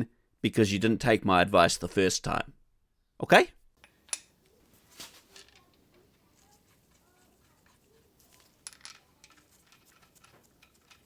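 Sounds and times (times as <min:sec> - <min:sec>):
faint clicks and knocks of handling: 0:03.8 - 0:11.0.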